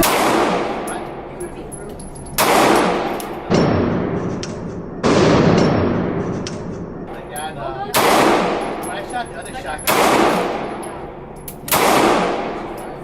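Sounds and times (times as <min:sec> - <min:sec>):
gunshots echoing: 0:00.0 - 0:01.3, 0:02.4 - 0:07.0, 0:07.9 - 0:09.0, 0:09.8 - 0:13.0.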